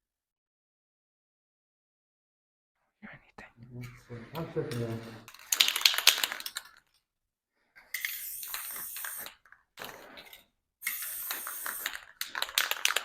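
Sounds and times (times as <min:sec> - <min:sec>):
spray can ball rattling: 0:05.2 - 0:06.9, 0:07.9 - 0:13.0
spray hissing: 0:08.0 - 0:09.4, 0:10.8 - 0:13.0.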